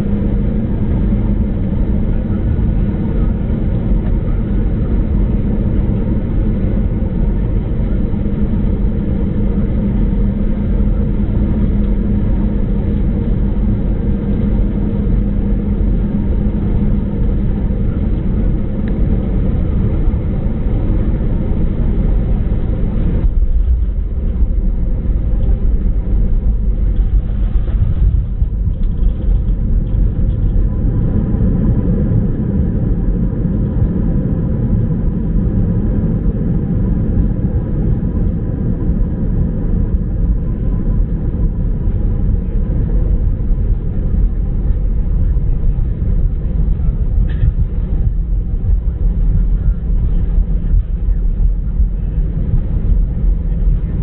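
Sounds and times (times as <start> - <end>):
aircraft cabin engine rumble: 0.0 - 54.0
steady hum: 0.0 - 54.0.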